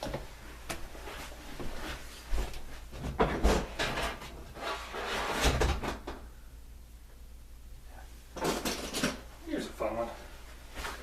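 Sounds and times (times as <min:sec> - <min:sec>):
toys rattling and knocking: 0:08.4 - 0:09.2.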